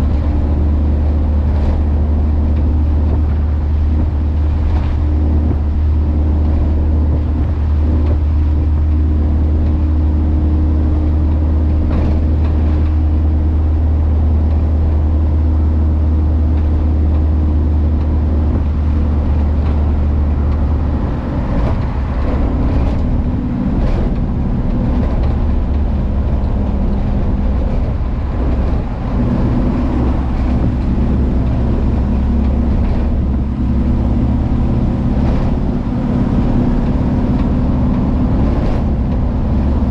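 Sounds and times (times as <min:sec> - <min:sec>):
van engine and exhaust drone: 0:00.0 - 0:39.9.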